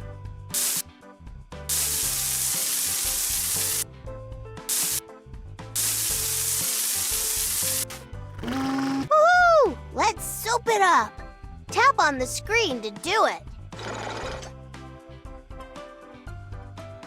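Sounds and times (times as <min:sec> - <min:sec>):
light children's music: 0:00.0 - 0:17.0
cartoon water spray hiss: 0:00.5 - 0:00.8, 0:01.7 - 0:03.9, 0:04.7 - 0:05.0, 0:05.8 - 0:08.0.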